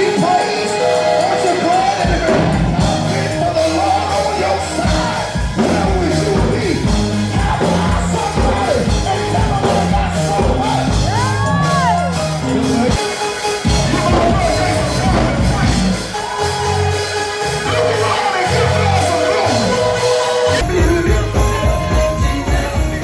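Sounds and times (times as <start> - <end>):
live gospel music: 0.0 - 23.0
voices singing and shouting: 0.0 - 23.0.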